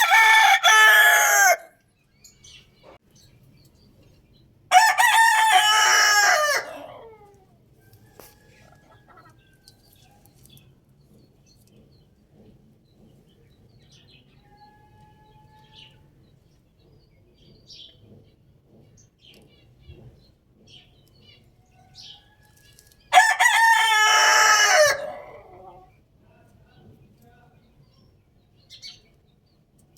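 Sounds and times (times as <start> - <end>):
rooster crowing: 0.0 - 1.8, 4.7 - 7.3, 23.1 - 25.8.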